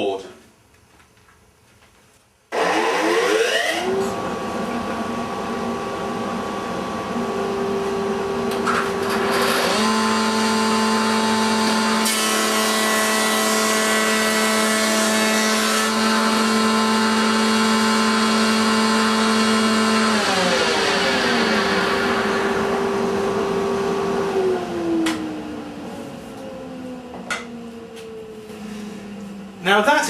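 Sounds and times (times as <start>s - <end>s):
board passing through cutter: 2.5s - 6.2s, 8.4s - 25.8s
thicknesser whining: 2.5s - 12.2s, 17.7s - 30.0s
cutter head spinning down: 2.6s - 4.0s.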